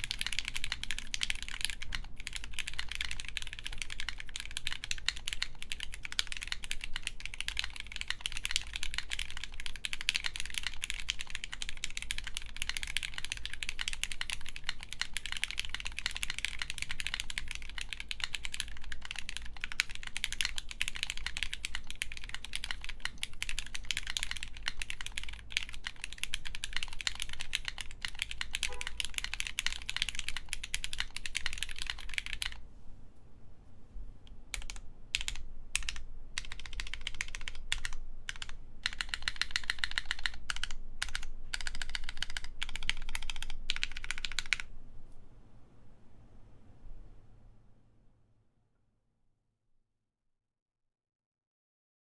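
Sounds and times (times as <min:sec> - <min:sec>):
fast typing on mechanical keyboard: 0:00.0 - 0:32.6, 0:34.5 - 0:44.7.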